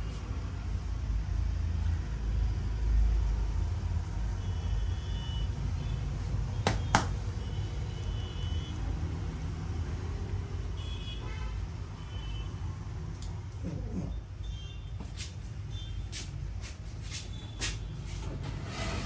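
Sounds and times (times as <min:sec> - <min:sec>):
steady low rumble: 0:00.0 - 0:06.6.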